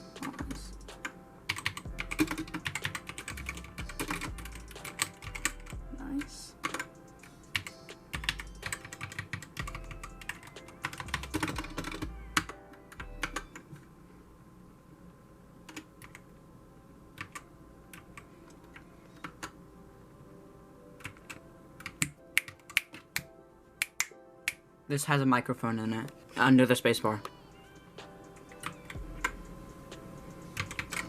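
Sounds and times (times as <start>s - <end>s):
mechanical keyboard keystrokes: 1.5s - 5.6s, 7.5s - 13.6s, 21.0s - 24.6s, 30.6s - 31.0s.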